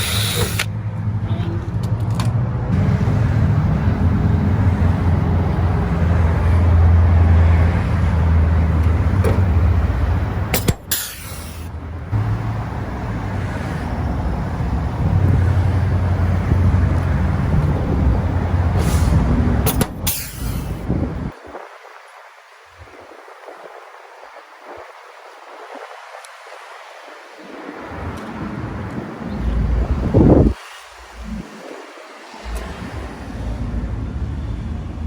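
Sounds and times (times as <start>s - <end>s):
low motor rumble: 0.0s - 21.3s, 28.0s - 31.4s, 32.4s - 35.0s
sharp clicks: 10.5s - 11.7s, 19.7s - 20.8s.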